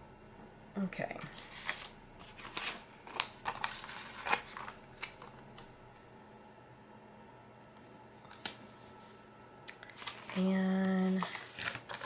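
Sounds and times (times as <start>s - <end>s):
paper sticker sheets crinkling: 1.2s - 5.7s, 9.7s - 12.0s.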